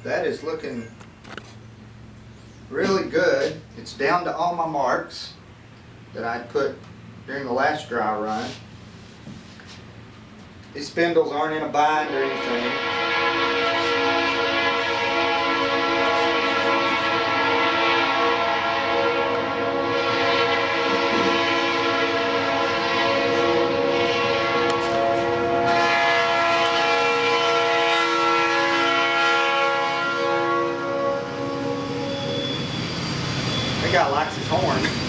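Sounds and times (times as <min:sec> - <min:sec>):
train horn: 0:11.8 - 0:35.0.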